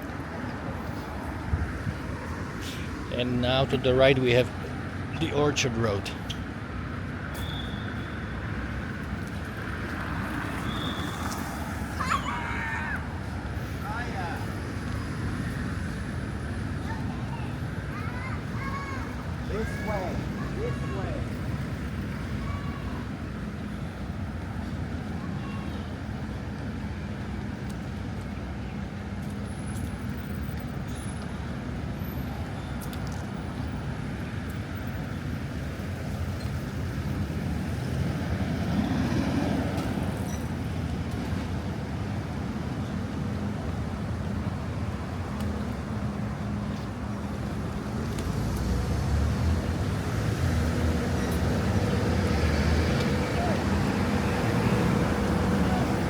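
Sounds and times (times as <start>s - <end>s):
tyres hissing on road: 0.6s - 6.2s, 9.7s - 26.4s
vehicle engines running: 12.6s - 56.0s.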